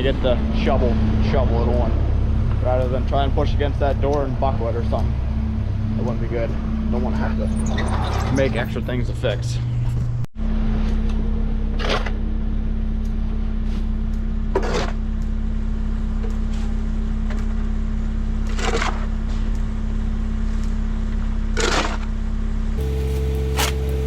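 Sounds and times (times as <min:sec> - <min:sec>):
loader engine idling: 0:00.0 - 0:21.5, 0:22.1 - 0:24.0
shovel scraping silage: 0:22.8 - 0:24.0.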